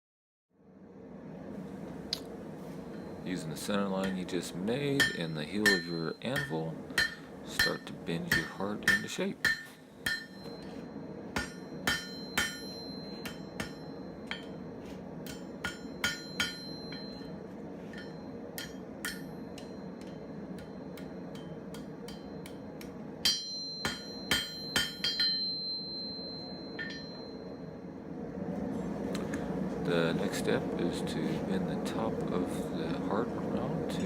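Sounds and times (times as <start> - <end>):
hammer striking steel on anvil: 4.0 - 27.6
anvil ringing: 4.9 - 10.8, 11.4 - 27.8.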